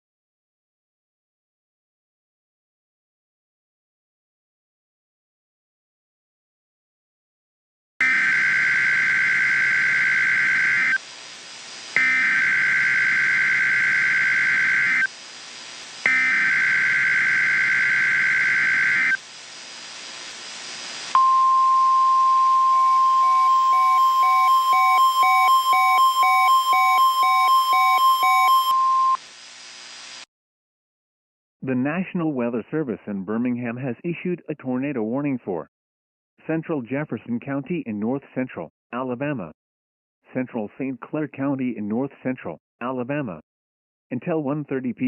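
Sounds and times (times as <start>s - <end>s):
warbling digital data tones: 12.0s - 15.1s, 16.1s - 19.2s.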